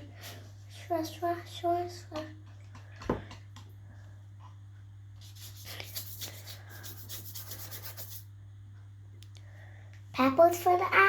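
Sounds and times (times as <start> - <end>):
paintbrush scrubbing on a surface: 5.2 - 8.3.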